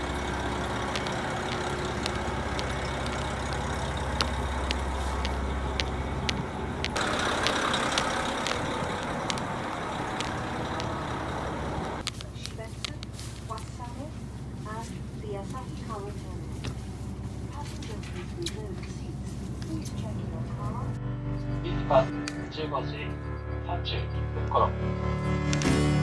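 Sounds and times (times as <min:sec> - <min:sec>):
rushing hissing noise: 0:00.0 - 0:12.1
scattered clicks: 0:00.0 - 0:13.7
diesel train engine hum: 0:00.0 - 0:21.0.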